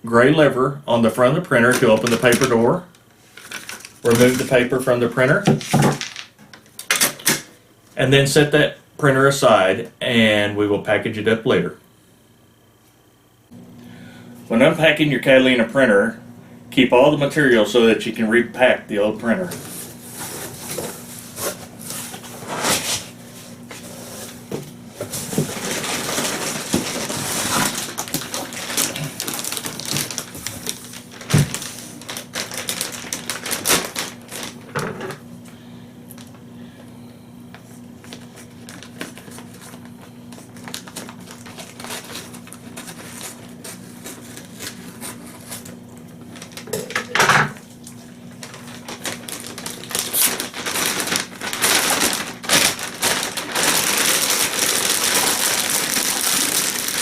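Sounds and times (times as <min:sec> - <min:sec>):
cardboard and packing rustling: 0:01.6 - 0:04.7, 0:19.4 - 0:35.2, 0:37.5 - 0:57.0.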